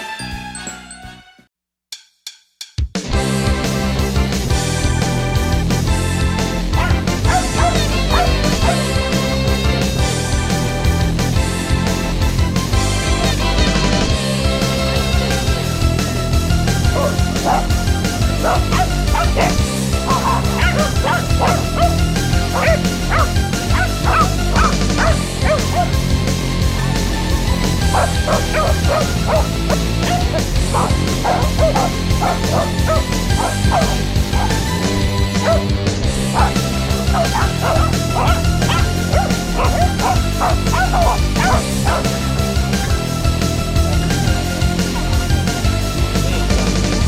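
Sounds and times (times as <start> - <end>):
background music: 0.0 - 1.5, 3.0 - 47.0
dogs barking and yipping: 6.3 - 9.9, 15.2 - 43.2.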